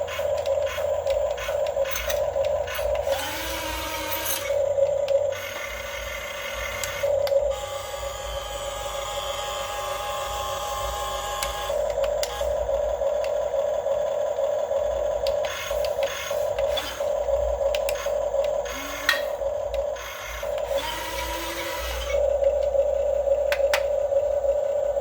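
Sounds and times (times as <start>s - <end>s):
metal parts clicking and scraping: 0.0s - 4.6s
electric motors whining: 0.0s - 25.0s.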